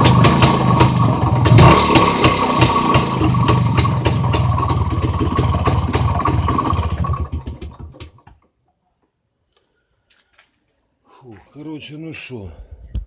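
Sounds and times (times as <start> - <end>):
two-stroke motorcycle engine running: 0.0 - 8.2.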